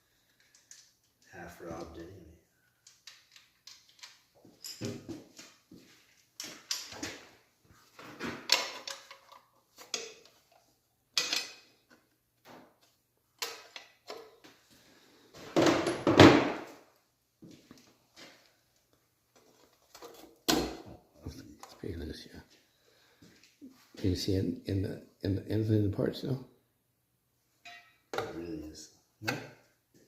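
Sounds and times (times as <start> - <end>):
metallic clatter of hand tools: 8.5 - 10.6.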